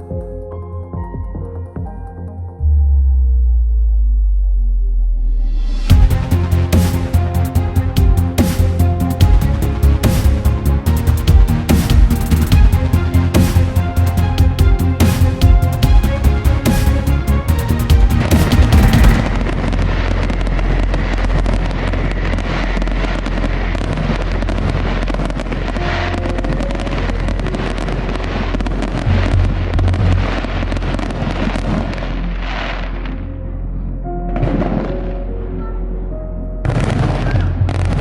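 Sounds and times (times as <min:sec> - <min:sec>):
music playing: 0:00.0 - 0:38.0
fireworks bursting and crackling: 0:08.2 - 0:33.2.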